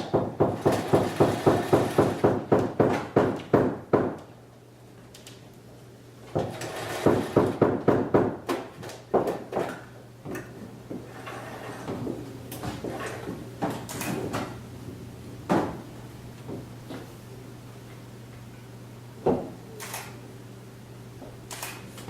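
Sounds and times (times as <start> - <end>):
objects knocking and clattering: 6.3 - 14.6
steady low hum: 9.8 - 22.0.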